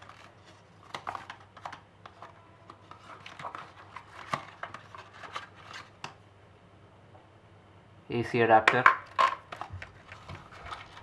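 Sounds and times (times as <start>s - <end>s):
hands handling packaging: 0.0s - 6.2s, 9.1s - 11.0s.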